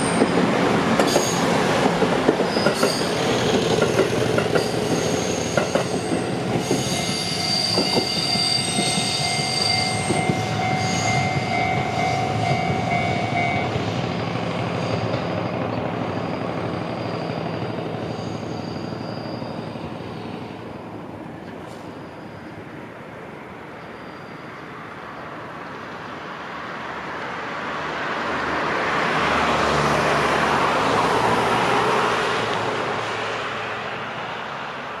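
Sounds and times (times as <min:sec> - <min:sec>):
train wheels squealing: 0:00.0 - 0:01.6, 0:02.3 - 0:20.7, 0:21.4 - 0:22.8, 0:23.6 - 0:26.1.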